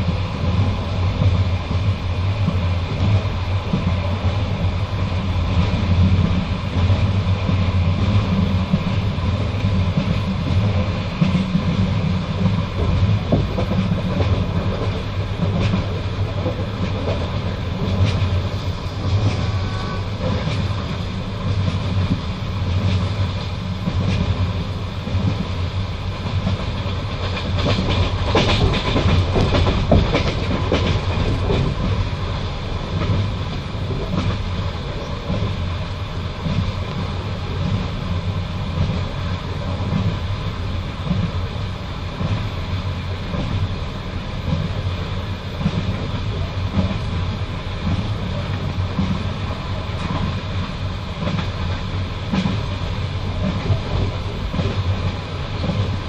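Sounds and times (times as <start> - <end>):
train carriage rumble: 0.0 - 56.0
wheels clacking over rail joints: 5.6 - 56.0.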